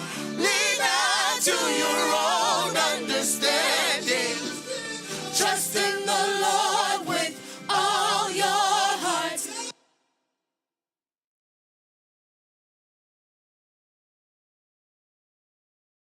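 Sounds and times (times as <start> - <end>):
gospel choir singing: 0.0 - 9.8.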